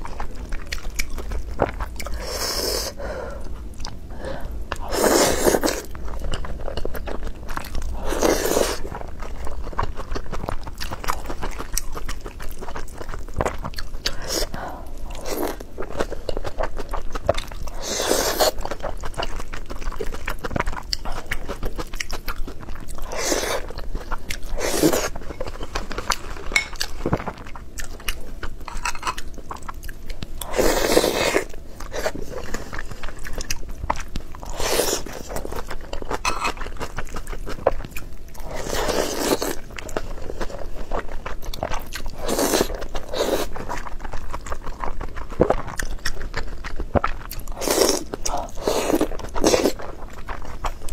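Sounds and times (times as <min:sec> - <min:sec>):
chewing with wet mouth clicks: 0:00.0 - 0:02.4, 0:03.4 - 0:04.0, 0:08.8 - 0:14.6, 0:18.4 - 0:30.5, 0:31.8 - 0:38.5, 0:39.2 - 0:50.9.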